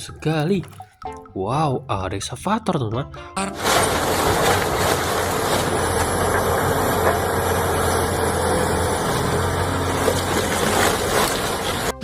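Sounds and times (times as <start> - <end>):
excavator engine idling: 3.5 - 12.0.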